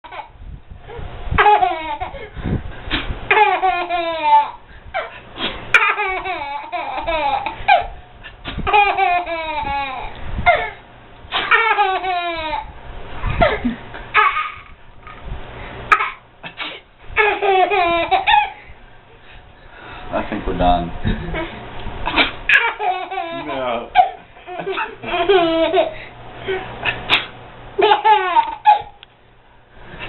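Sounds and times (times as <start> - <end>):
baby laughing hysterically: 0.0 - 0.4, 1.4 - 2.4, 3.3 - 14.8, 15.9 - 18.7, 21.2 - 26.1, 27.8 - 29.0
man sneezing: 26.8 - 27.4.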